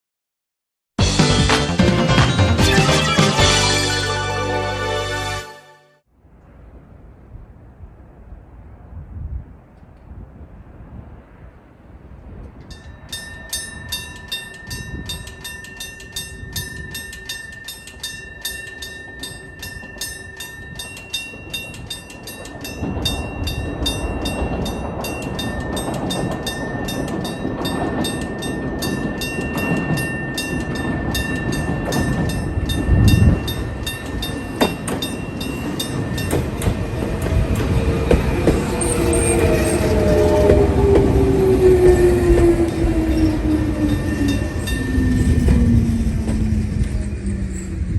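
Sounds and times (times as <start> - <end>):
level crossing bell ringing: 1.2 - 5.7, 12.7 - 45.8
train passing with rumble: 12.2 - 47.9
falling whine of train: 12.3 - 47.9.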